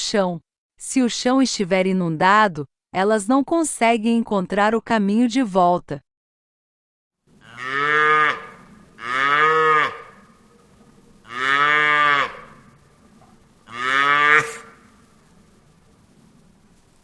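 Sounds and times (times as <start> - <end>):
cow mooing: 7.4 - 16.8.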